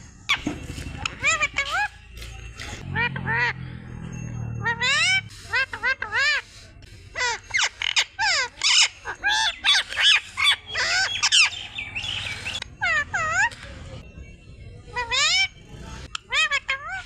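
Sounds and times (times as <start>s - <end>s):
parrot chattering: 1.1s - 2.0s, 4.6s - 6.5s, 7.1s - 13.5s, 14.9s - 17.0s.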